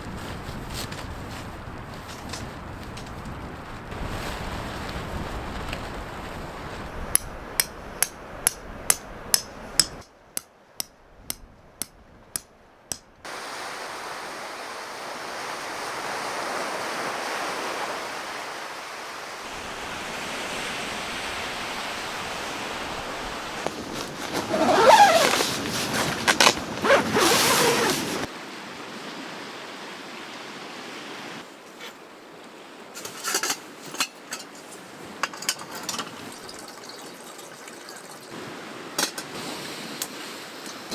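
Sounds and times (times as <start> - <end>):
surf washing on a beach: 0.0 - 9.3, 13.3 - 26.4, 27.3 - 33.0.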